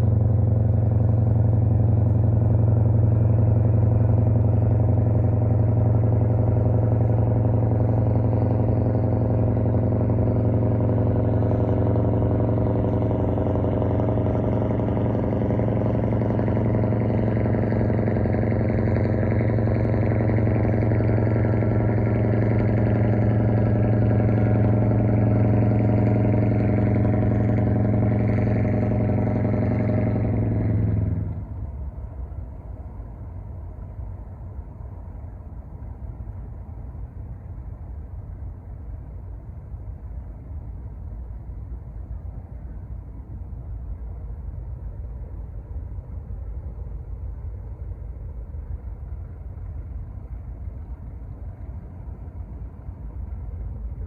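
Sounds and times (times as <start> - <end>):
ship engine humming: 0.0 - 35.0.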